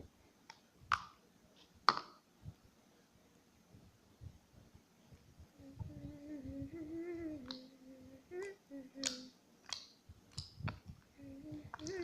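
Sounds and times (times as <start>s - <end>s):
faint humming tone: 2.4s - 12.0s
wet clicks and pops of slime: 9.0s - 10.8s.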